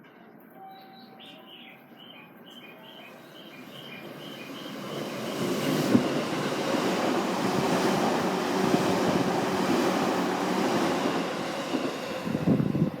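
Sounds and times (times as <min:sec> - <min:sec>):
electric train passing: 0:03.0 - 0:13.0.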